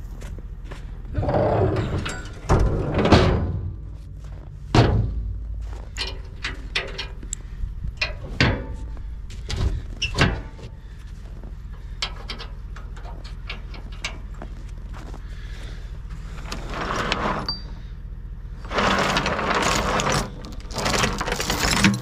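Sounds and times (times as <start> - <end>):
steady low hum: 0.0 - 22.0
sharp knocks and clunks: 4.7 - 7.0.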